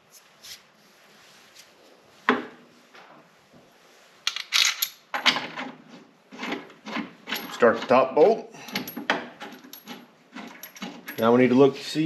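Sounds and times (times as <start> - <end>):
metal parts clicking and clattering: 4.3 - 5.8, 6.4 - 11.4.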